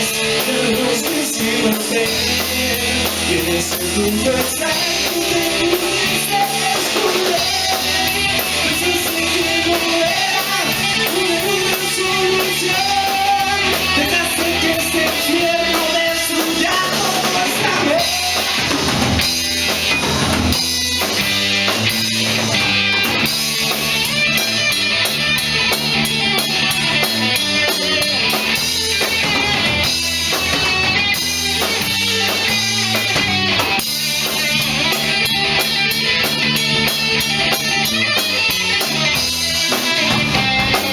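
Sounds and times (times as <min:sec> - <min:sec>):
held vocal line: 0:00.0 - 0:18.8
rock band with guitar and drums: 0:00.0 - 0:40.9.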